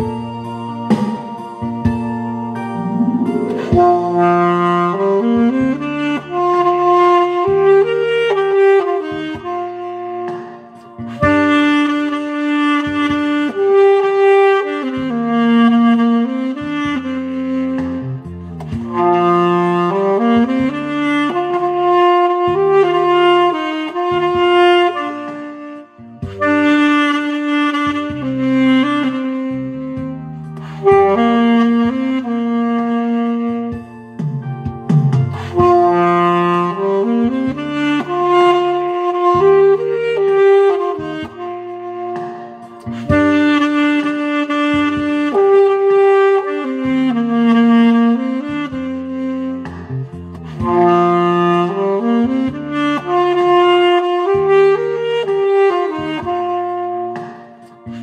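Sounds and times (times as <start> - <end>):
backing track with bass: 0.0 - 58.0
saxophone playing slow melody: 0.0 - 58.0.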